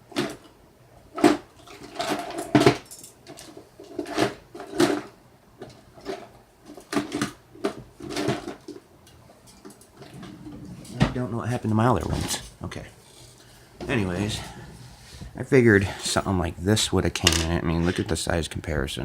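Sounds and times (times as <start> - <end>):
rummaging clatters and knocks: 1.1 - 16.2.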